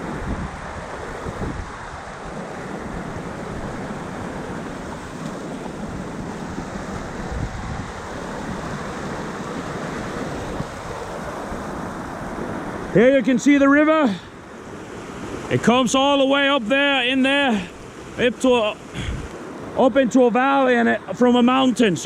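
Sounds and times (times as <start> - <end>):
wind buffeting microphone: 0.0 - 12.9, 17.7 - 19.4
river flowing fast: 0.0 - 22.0.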